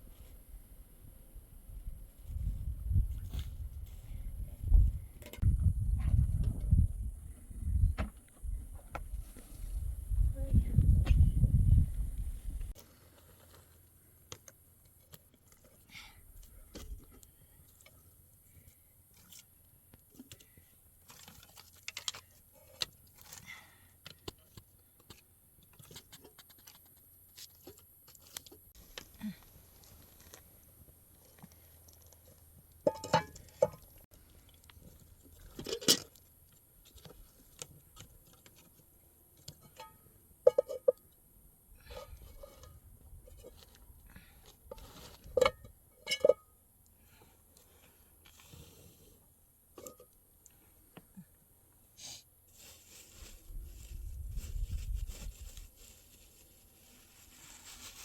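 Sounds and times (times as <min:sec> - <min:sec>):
objects being handled: 0:12.7 - 0:30.5.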